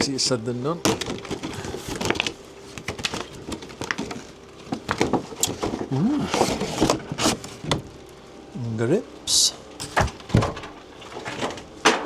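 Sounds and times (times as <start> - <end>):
packaging rustling: 0.8 - 8.0
man humming: 5.8 - 6.6.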